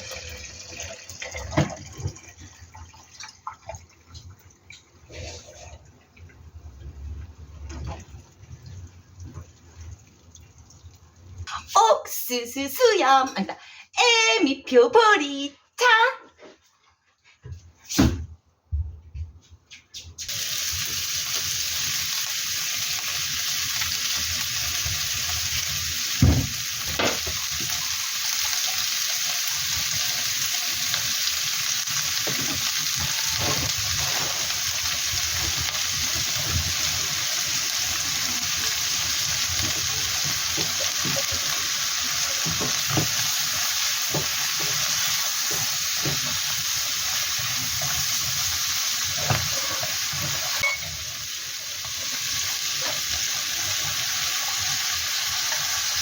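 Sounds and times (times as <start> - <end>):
food sizzling in a pan: 20.3 - 56.0.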